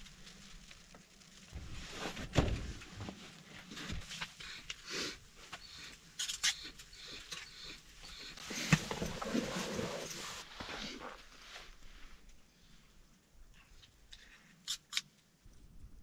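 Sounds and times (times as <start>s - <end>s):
rustling: 0.0s - 12.7s.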